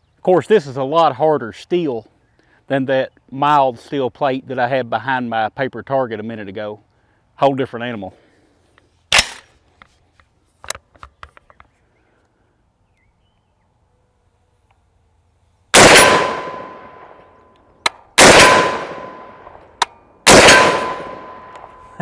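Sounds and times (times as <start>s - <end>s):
rifle shots with echo: 15.8s - 17.2s, 18.2s - 22.0s
steel target ringing: 20.3s - 22.0s.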